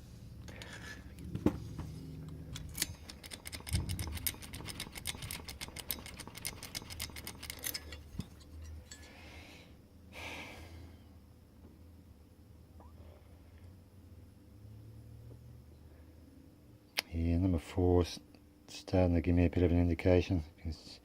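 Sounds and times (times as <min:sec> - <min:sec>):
rapid metallic clicking in padlock: 0:02.3 - 0:09.0.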